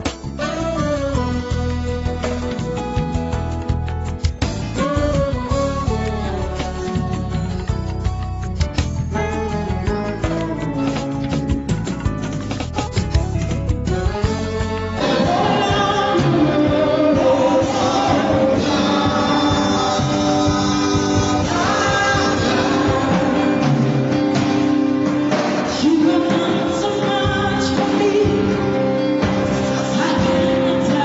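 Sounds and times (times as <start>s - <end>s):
instrumental accompaniment: 0.0s - 31.0s
voices singing worship song: 15.0s - 24.6s, 25.5s - 31.0s.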